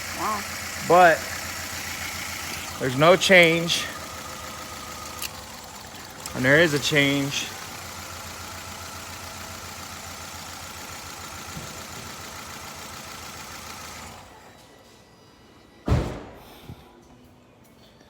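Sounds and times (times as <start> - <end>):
car engine idling with misfire: 0.0 - 14.7
loud thump: 15.9 - 16.6.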